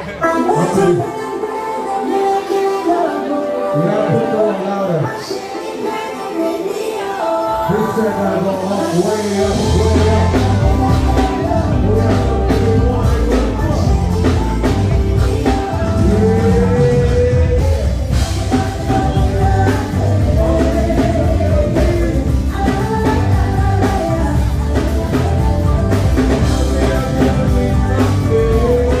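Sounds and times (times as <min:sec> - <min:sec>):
drums and heavy bass: 0:08.7 - 0:29.0.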